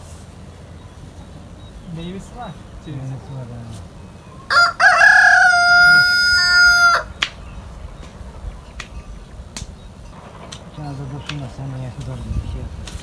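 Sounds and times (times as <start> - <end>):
rooster crowing: 4.4 - 7.2.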